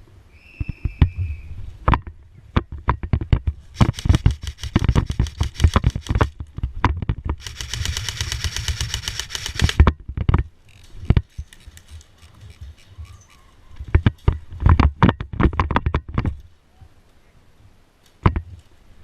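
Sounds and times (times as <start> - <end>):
full-auto airsoft burst: 3.8 - 6.3, 7.4 - 9.8.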